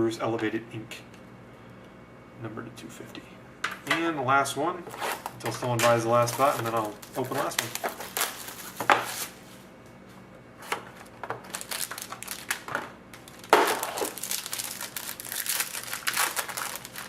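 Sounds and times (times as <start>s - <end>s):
wrapper tearing and crinkling: 4.9s - 9.4s, 11.0s - 17.0s.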